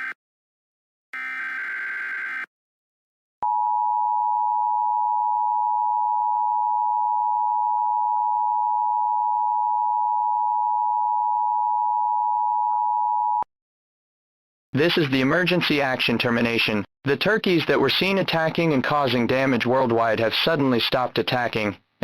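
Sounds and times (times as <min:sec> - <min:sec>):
two-tone alarm tone: 0:01.2 - 0:02.5, 0:03.4 - 0:13.4.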